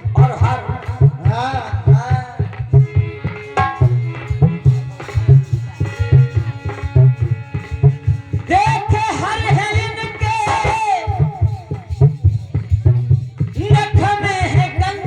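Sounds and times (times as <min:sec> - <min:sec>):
hand drum beat: 0:00.0 - 0:15.0
held instrumental melody: 0:00.0 - 0:15.0.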